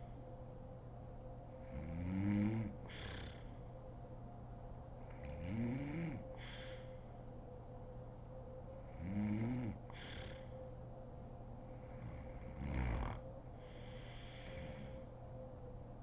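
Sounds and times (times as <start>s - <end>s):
woman snoring: 1.8s - 3.5s, 5.3s - 6.2s, 9.0s - 10.4s, 12.1s - 13.2s
breathy exhale: 2.8s - 3.6s, 6.4s - 7.2s, 9.9s - 10.6s, 13.6s - 15.2s.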